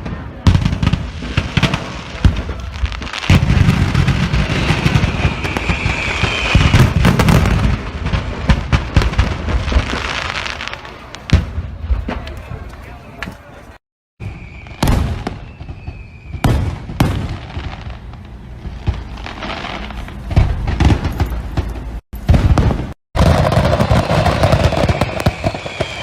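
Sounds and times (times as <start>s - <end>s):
fireworks crackling and banging: 0.0s - 26.0s
thin firework whistle: 4.5s - 7.1s, 14.2s - 17.0s, 24.6s - 26.0s.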